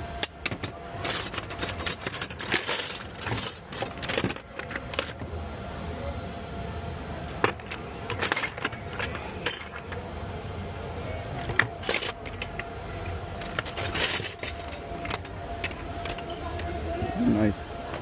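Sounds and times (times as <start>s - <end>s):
steady background hum: 0.0s - 18.0s
metal hand tools clinking: 0.2s - 5.2s, 7.5s - 9.9s, 13.4s - 16.7s.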